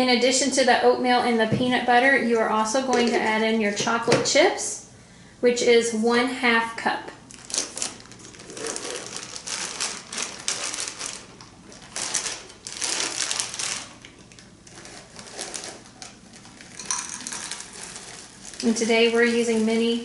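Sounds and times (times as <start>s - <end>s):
chocolate chips pouring: 7.4s - 20.0s.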